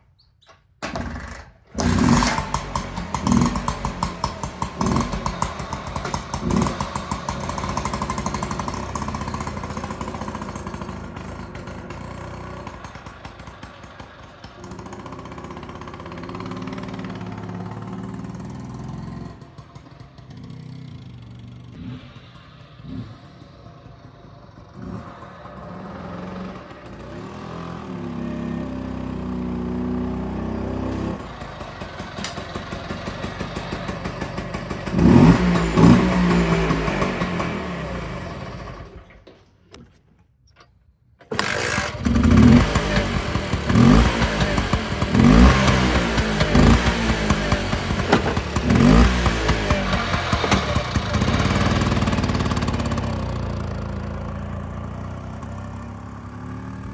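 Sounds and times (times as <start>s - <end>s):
scooter engine revving: 0.8s - 39.3s, 41.2s - 56.9s.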